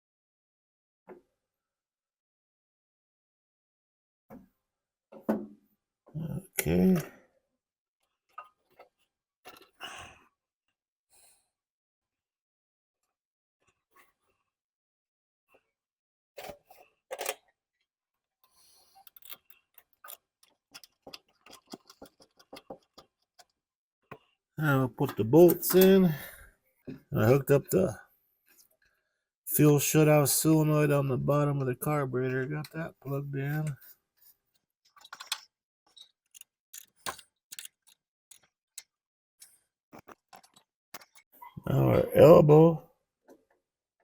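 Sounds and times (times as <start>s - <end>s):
clicks and knocks of tools: 34.5s - 41.3s.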